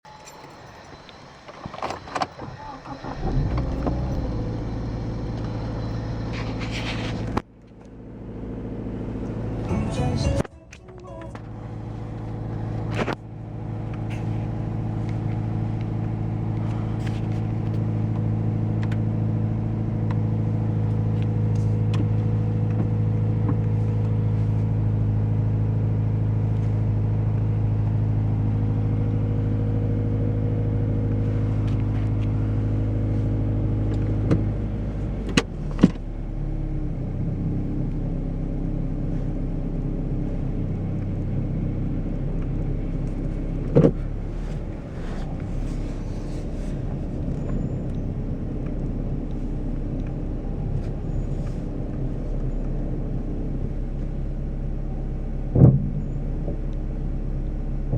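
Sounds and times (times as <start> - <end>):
car engine running: 0.0 - 57.9.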